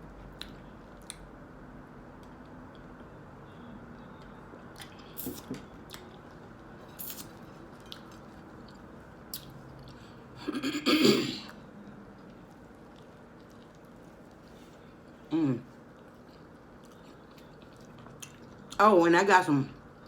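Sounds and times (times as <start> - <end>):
wet mouth chewing clicks: 9.3 - 9.9.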